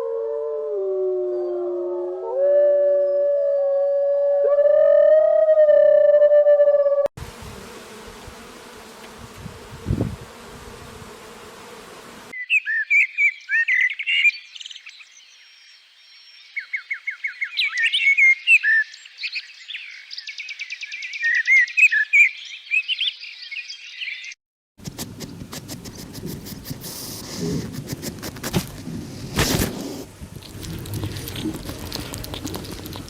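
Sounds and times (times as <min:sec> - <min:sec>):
songbird chirping and trilling: 0:01.1 - 0:02.3, 0:12.4 - 0:24.4.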